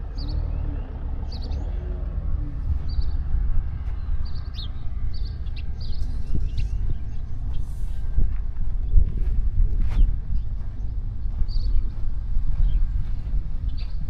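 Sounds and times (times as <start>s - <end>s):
low rumble of breeze and sea: 0.0s - 14.0s
small birds chirping: 0.0s - 14.0s.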